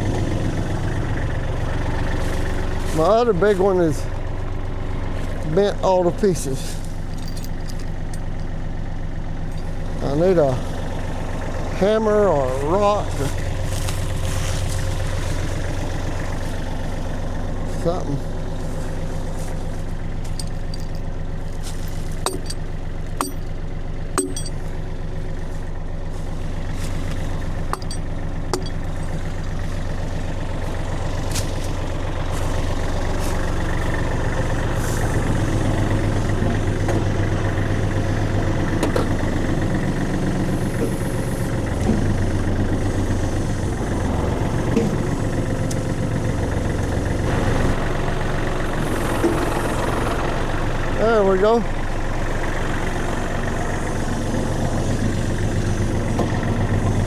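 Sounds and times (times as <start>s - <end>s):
diesel engine idling: 0.0s - 57.0s
sharp metal knocks: 22.2s - 23.6s, 24.2s - 24.7s, 27.7s - 29.0s.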